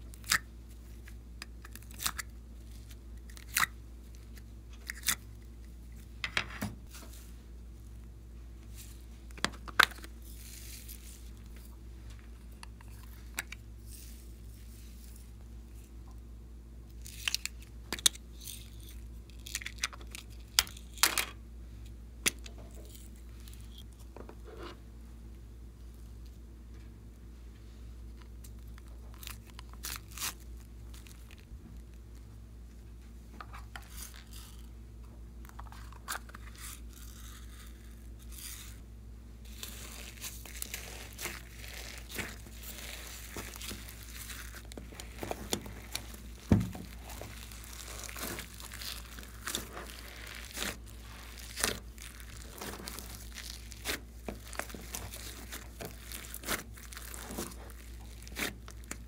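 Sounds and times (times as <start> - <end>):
slime squished by hand: 39.5 - 59.0.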